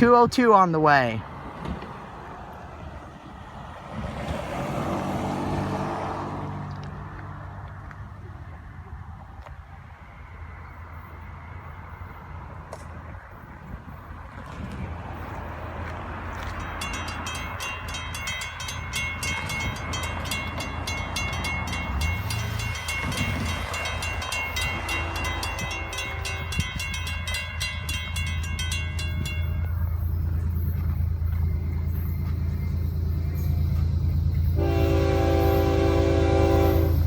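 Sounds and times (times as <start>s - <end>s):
diesel locomotive rumble: 0.0s - 37.0s
crossing bell ringing: 16.2s - 37.0s
train horn chord: 22.2s - 27.0s, 34.5s - 37.0s.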